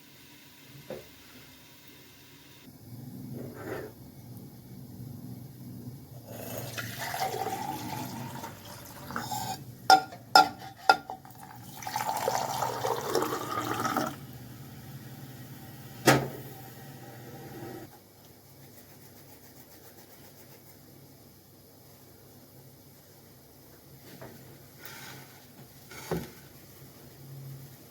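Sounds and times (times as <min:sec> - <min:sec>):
water running into container: 0:06.2 - 0:09.6, 0:11.2 - 0:14.2
dishes clinking: 0:09.1 - 0:11.3.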